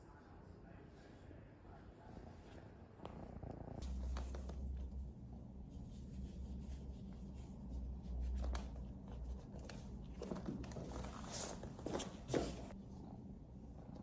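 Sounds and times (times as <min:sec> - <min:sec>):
cat purring: 0:03.0 - 0:08.2.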